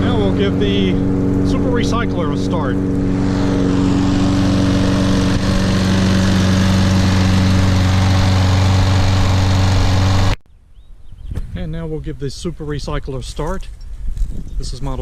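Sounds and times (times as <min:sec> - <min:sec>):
lawn mower engine running: 0:00.0 - 0:10.4.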